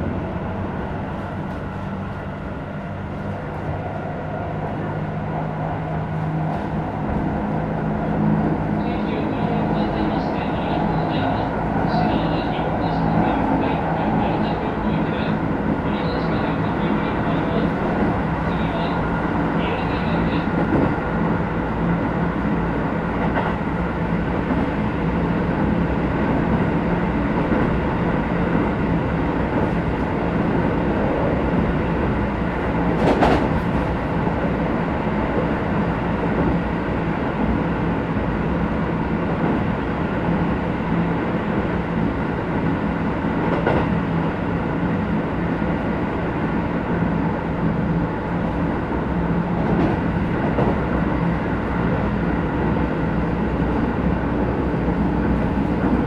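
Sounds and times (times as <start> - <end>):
train wheels rumbling on rail: 0.0 - 56.0.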